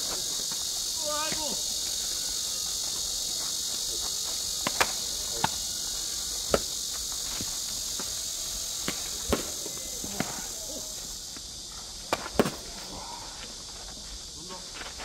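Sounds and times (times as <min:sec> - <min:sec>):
crickets chirring: 0:00.0 - 0:15.0
bat striking ball: 0:04.6 - 0:05.6, 0:06.4 - 0:08.2, 0:08.8 - 0:10.5.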